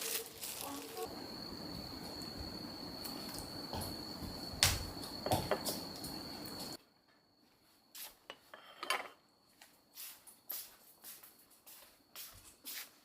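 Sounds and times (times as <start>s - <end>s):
small objects clinking and scraping: 0.0s - 1.1s.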